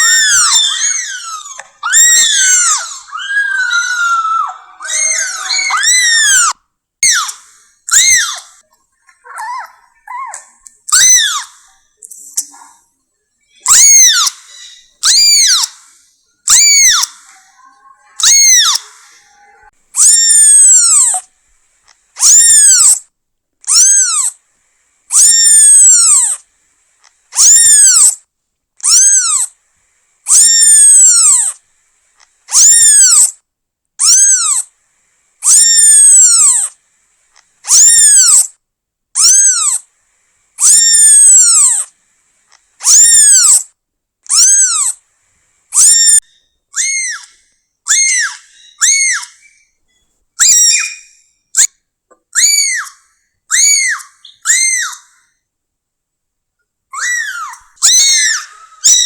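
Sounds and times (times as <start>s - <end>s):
kitten meowing: 0.0s - 8.6s, 9.4s - 11.6s, 13.6s - 15.8s, 16.5s - 18.9s, 20.0s - 21.3s, 23.7s - 24.3s, 28.8s - 29.5s, 30.3s - 31.6s, 34.0s - 34.6s, 42.8s - 43.6s, 44.3s - 45.0s, 57.0s - 59.0s.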